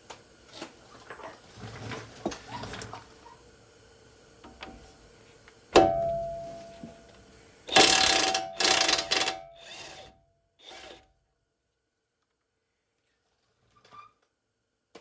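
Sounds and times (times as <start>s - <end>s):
metallic clank with ringing: 5.8s - 7.1s
tool rattling on nut: 7.7s - 10.1s.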